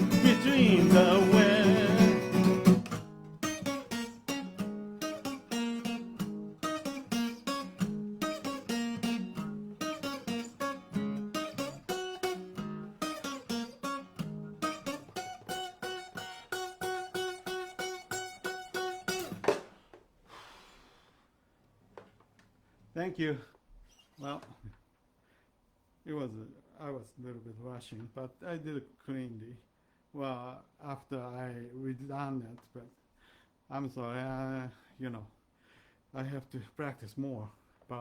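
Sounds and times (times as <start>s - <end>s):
acoustic guitar plucked notes: 0.0s - 19.4s.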